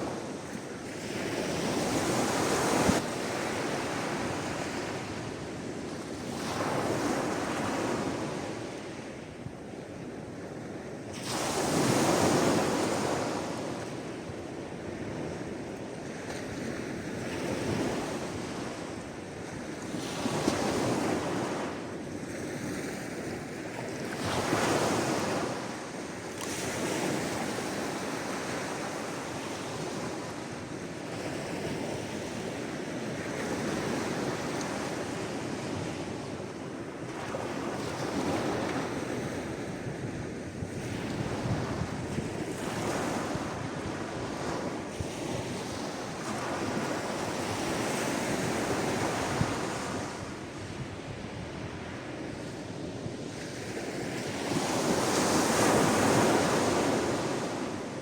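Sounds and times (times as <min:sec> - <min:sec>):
sea waves breaking on shore: 0:10.2 - 0:58.0.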